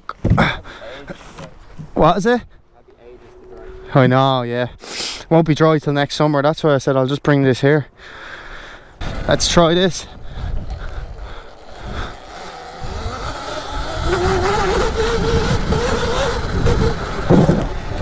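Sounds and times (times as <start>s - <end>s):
electric motor whine: 9.0s - 18.0s
tyres rumbling on mud: 9.0s - 18.0s
wind on microphone: 9.0s - 18.0s.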